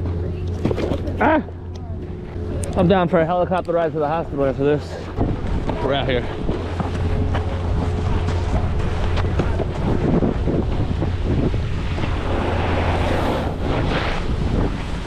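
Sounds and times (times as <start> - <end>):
wind buffeting microphone: 4.4 - 15.0.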